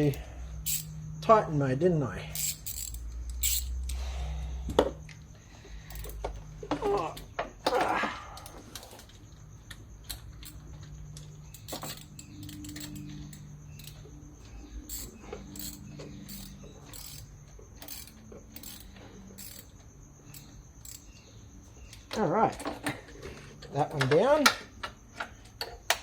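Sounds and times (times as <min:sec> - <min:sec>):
hand ratchet clicking: 0:00.0 - 0:01.0, 0:02.3 - 0:04.1, 0:05.9 - 0:06.3, 0:11.5 - 0:14.1, 0:14.8 - 0:21.1.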